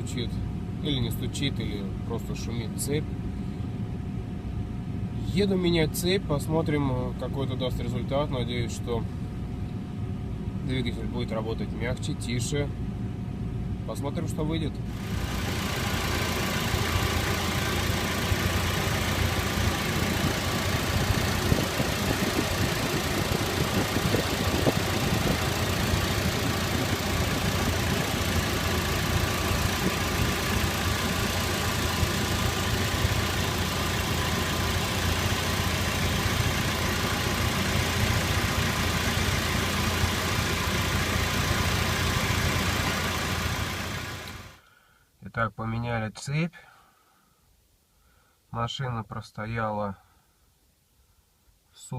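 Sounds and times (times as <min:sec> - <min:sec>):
car engine idling: 0:14.8 - 0:44.7.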